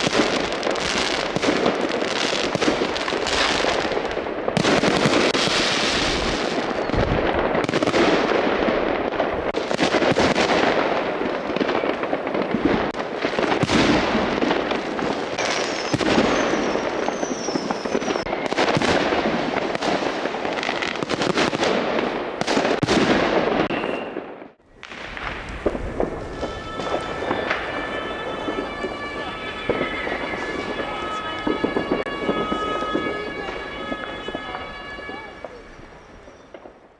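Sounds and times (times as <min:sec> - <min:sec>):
fireworks crackling and banging: 0:00.0 - 0:36.9
rocket whistles: 0:15.4 - 0:18.8, 0:23.6 - 0:36.8.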